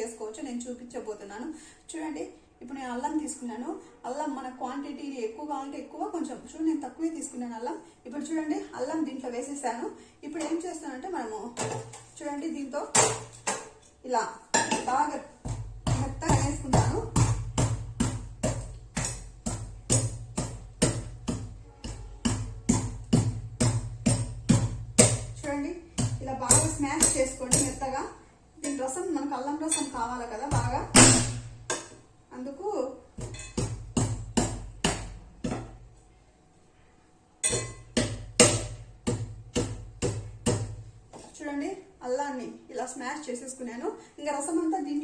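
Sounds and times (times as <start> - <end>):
pestle pounding knocks: 12.9 - 13.7, 14.6 - 28.1, 30.0 - 32.0, 33.2 - 35.9, 37.4 - 41.2.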